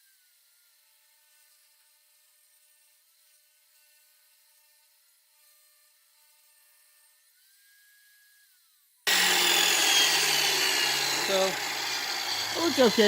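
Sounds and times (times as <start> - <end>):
table saw running: 9.1 - 13.0.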